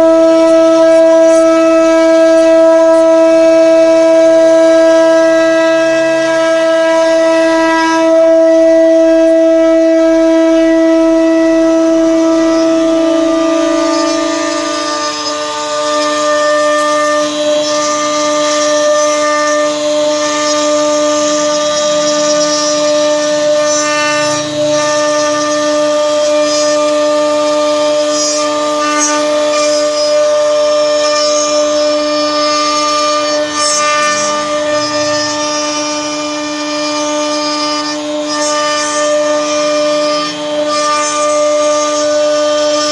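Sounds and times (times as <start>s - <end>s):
router spindle whine: 0.0s - 42.9s.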